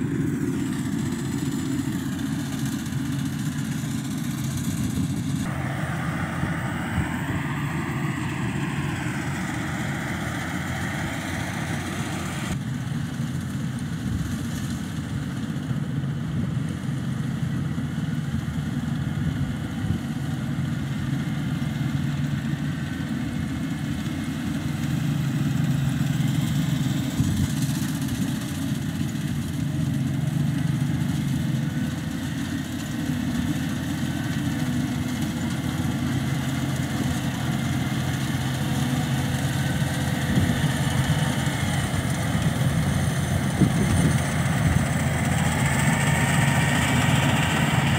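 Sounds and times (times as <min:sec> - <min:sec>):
harvesting machine engine drone: 0:00.0 - 0:47.9
high wavering sound: 0:05.5 - 0:12.6.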